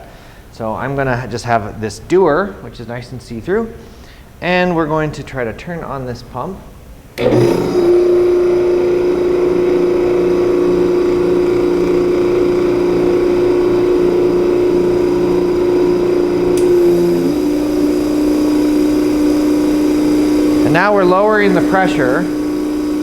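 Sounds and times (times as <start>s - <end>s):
vacuum pump droning: 6.7s - 23.0s.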